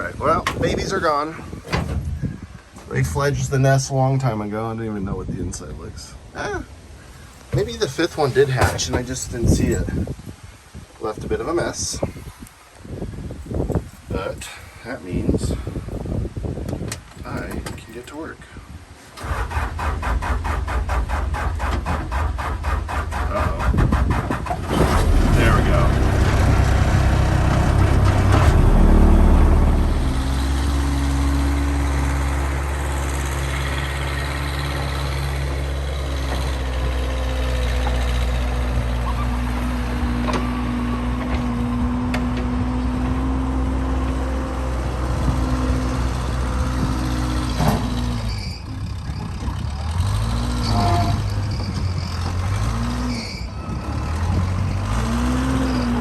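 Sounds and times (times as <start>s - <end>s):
backhoe engine running: 7.1s - 9.9s, 19.2s - 56.0s.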